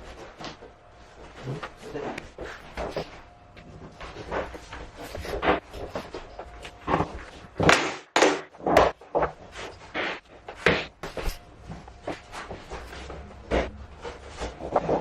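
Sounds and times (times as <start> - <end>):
knocks and thuds of flooring planks: 6.8 - 11.3.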